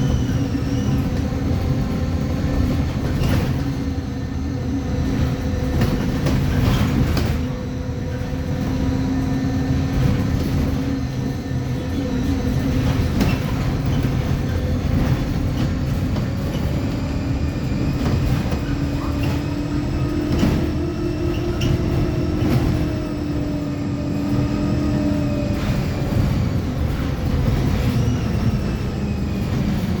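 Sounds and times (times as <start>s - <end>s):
bus differential whine: 0.0s - 30.0s
drivetrain low rumble: 0.0s - 30.0s.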